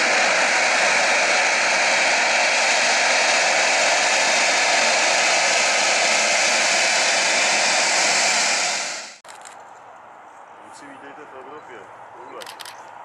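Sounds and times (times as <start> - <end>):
jet engines roaring: 0.0 - 9.2.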